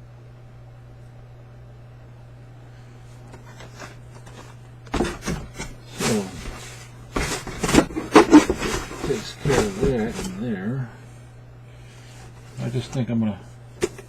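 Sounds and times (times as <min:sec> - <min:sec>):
packaging knocks and rustles: 0:03.3 - 0:10.4, 0:13.8 - 0:14.0.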